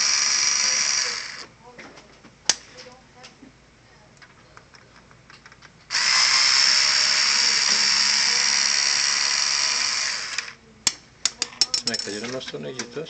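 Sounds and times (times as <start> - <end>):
electric screwdriver whining: 0.0 - 1.5, 5.9 - 10.6.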